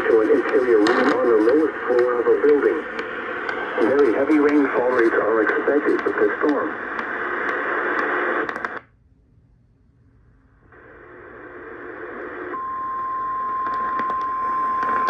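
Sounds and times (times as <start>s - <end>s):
recorded voice on radio: 0.0s - 8.6s
radio hiss: 0.0s - 8.8s, 10.8s - 12.6s.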